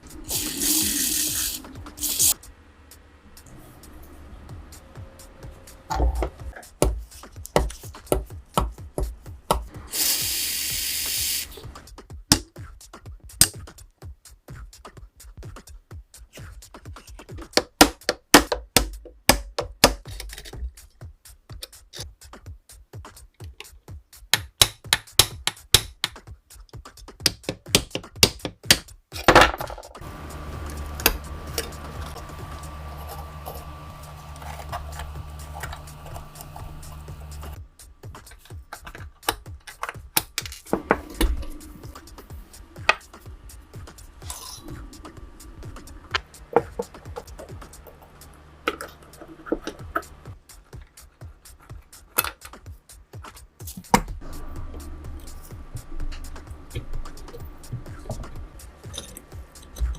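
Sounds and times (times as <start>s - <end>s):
small electric motor humming: 0.0s - 2.5s, 30.0s - 37.6s
workshop tool hissing: 0.0s - 2.5s, 9.7s - 11.9s, 30.0s - 37.6s
background music with steady beat: 0.0s - 59.9s.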